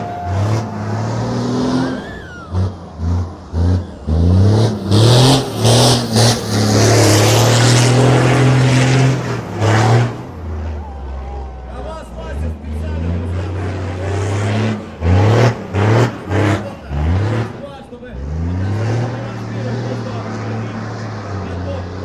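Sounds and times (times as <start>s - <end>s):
truck engine revving: 0.0s - 22.0s
tyres hissing on asphalt: 1.2s - 10.7s.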